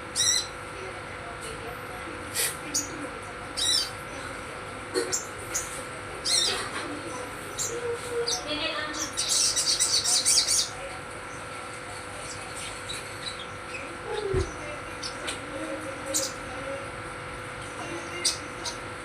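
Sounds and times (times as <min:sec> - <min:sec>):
songbird singing: 0:00.1 - 0:00.6, 0:03.6 - 0:04.1, 0:07.5 - 0:11.5, 0:12.2 - 0:15.4, 0:16.0 - 0:16.6, 0:17.8 - 0:18.8.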